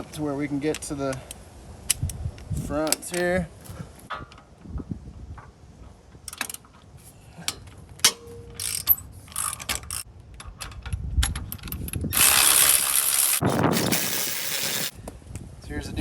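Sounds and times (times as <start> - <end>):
ratchet clicks: 7.5 - 14.9.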